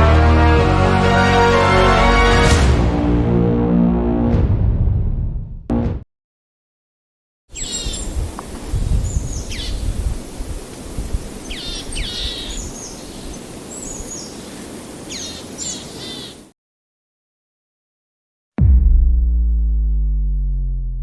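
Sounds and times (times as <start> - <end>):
birds chirping: 7.5 - 16.5.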